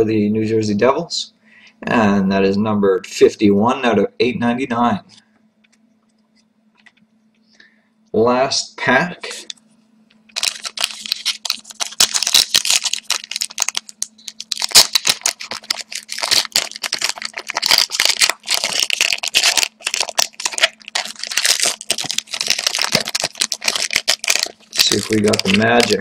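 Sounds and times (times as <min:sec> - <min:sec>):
faint steady hum: 0:00.0 - 0:26.0
wrapper crinkling: 0:10.3 - 0:26.0.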